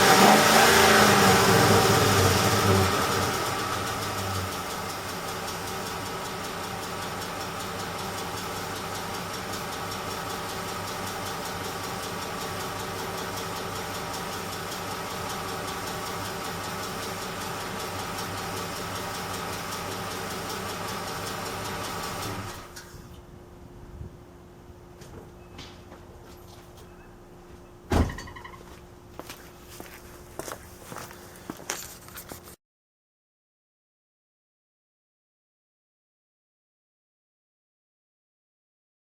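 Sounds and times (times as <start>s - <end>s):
fast even engine ticking: 0.0s - 22.1s
truck engine idling: 1.4s - 22.8s.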